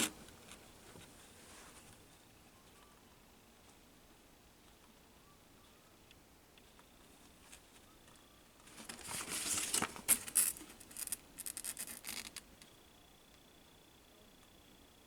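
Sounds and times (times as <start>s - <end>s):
packing material crinkling: 8.7s - 12.5s.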